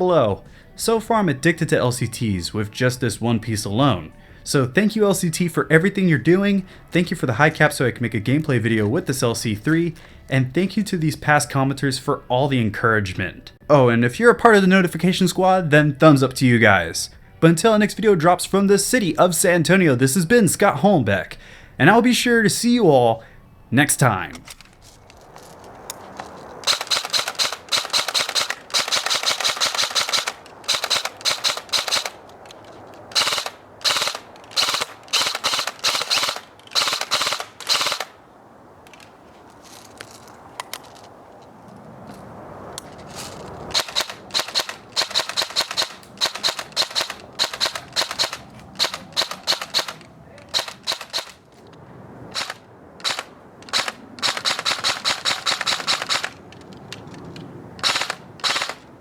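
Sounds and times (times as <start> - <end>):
airsoft gun firing bursts: 26.6 - 32.2, 33.1 - 38.2, 43.7 - 51.4, 52.3 - 56.4, 57.8 - 58.9.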